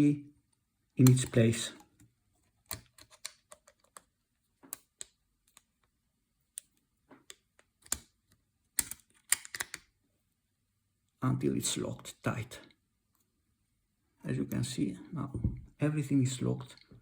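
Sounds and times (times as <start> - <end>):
plastic parts clicking and tapping: 1.0 - 6.0, 6.6 - 9.9.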